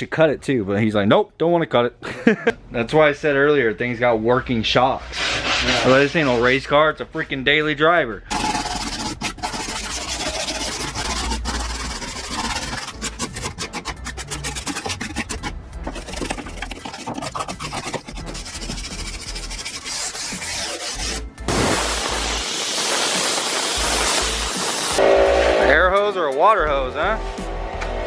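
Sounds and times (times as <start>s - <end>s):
wire brush scrubbing metal: 5.0s - 6.8s, 8.3s - 28.0s.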